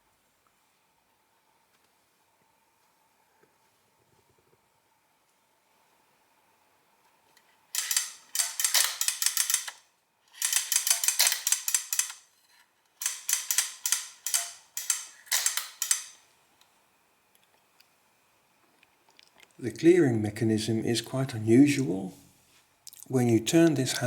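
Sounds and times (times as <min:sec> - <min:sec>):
metallic ratchet clicks: 0:07.8 - 0:12.2, 0:13.0 - 0:16.2.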